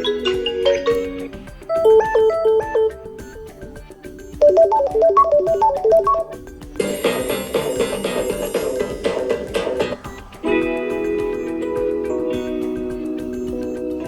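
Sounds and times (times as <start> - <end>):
chiming alarm melody: 1.7 - 3.8, 4.4 - 8.4
repeating run of notes: 1.7 - 6.5.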